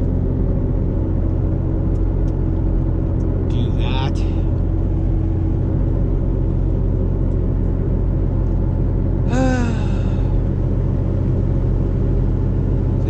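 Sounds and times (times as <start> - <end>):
car engine and road noise: 0.0 - 13.0
person making falling vocal sound: 9.3 - 10.4.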